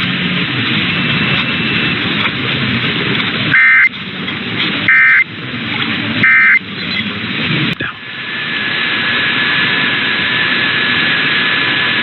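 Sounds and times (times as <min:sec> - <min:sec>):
radio hiss and static: 0:04.8 - 0:06.8, 0:07.6 - 0:12.0.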